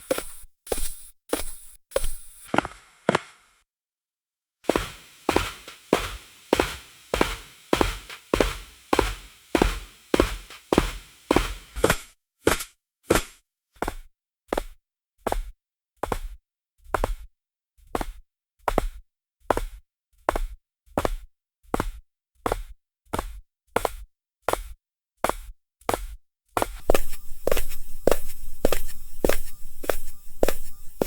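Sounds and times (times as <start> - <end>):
high heels clicking on marble: 0.0 - 2.5, 4.7 - 11.9, 26.8 - 31.0.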